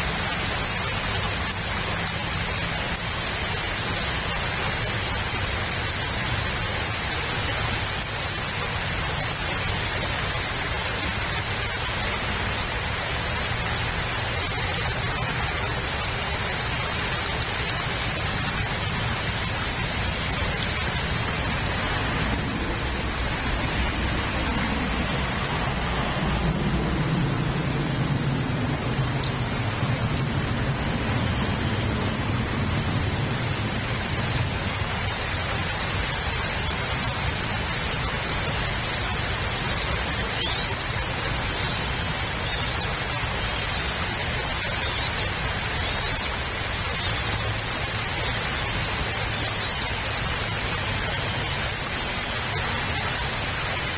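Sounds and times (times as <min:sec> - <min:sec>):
steady rain falling: 0:00.0 - 0:53.9
low rumble: 0:19.2 - 0:35.1.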